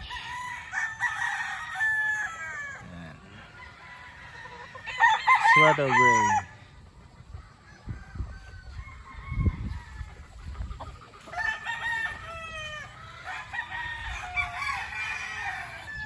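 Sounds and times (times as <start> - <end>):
roosters crowing: 0.0 - 16.0.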